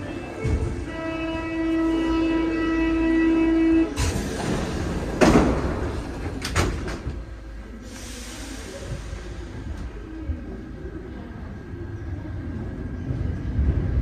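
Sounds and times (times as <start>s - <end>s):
train door warning tone: 0.0s - 6.8s
sliding doors rushing shut: 3.8s - 9.4s.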